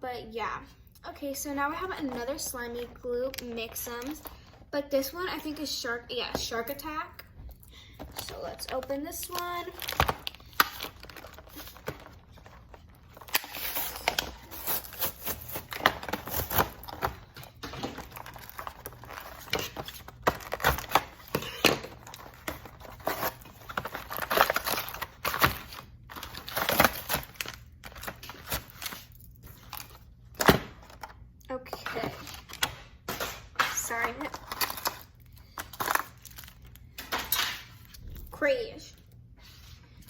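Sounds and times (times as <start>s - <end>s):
packaging crinkling and tearing: 8.0s - 31.2s, 32.1s - 38.2s.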